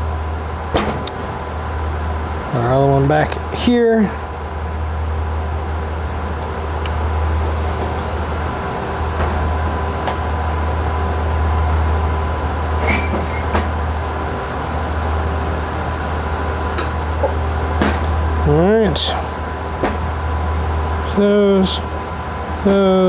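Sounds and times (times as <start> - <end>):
cooling fans humming: 0.0 - 23.0.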